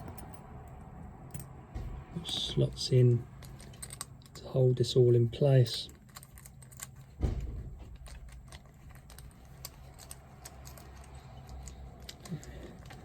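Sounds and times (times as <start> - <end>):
padlock parts clicking: 3.3 - 4.4, 5.7 - 13.0.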